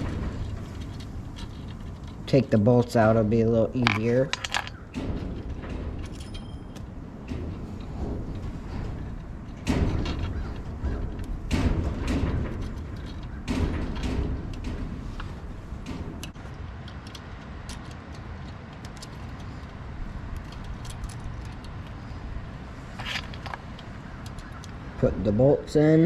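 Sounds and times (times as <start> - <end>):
knocks on metal parts: 0.0 - 17.2
steady low rumble: 0.0 - 25.8.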